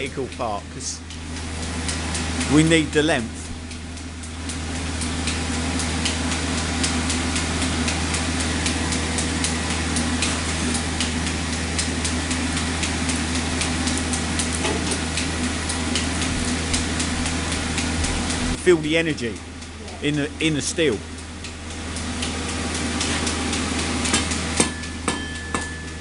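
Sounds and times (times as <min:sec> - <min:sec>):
low machine hum: 0:00.0 - 0:26.0
power hammer striking steel: 0:24.1 - 0:26.0.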